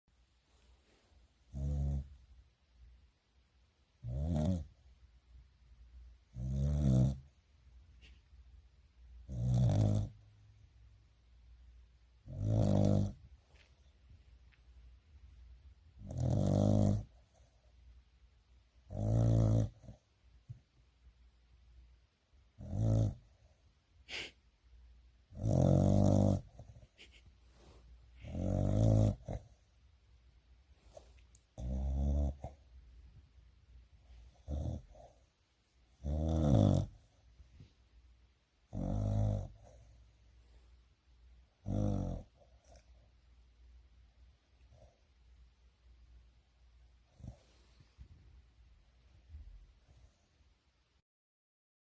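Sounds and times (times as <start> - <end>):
dog snoring: 1.4 - 2.2, 4.0 - 4.8, 6.3 - 7.3, 9.2 - 10.2, 12.2 - 13.3, 16.0 - 17.6, 18.8 - 20.0, 22.6 - 23.5, 25.3 - 29.6, 30.8 - 32.6, 34.1 - 35.3, 36.0 - 37.2, 38.7 - 40.0, 41.6 - 43.1, 47.0 - 47.7.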